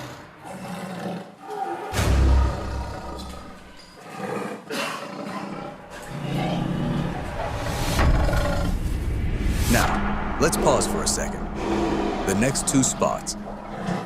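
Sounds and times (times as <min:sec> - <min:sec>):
animal roars and growls: 0:00.0 - 0:10.4, 0:11.2 - 0:14.0
cinematic sound bed: 0:06.5 - 0:14.0
low rumble: 0:06.5 - 0:14.0
deep boom: 0:07.1 - 0:13.8
sharp hits: 0:07.2 - 0:13.8.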